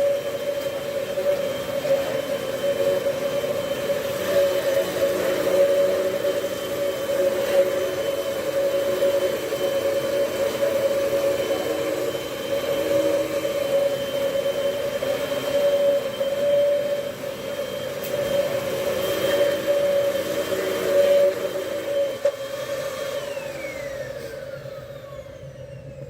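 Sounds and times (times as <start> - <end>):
vacuum cleaner running: 0.0 - 26.0.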